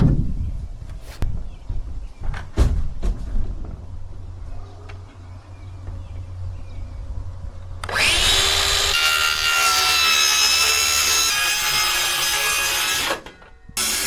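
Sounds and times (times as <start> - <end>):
power tool motor whining: 7.8 - 14.0.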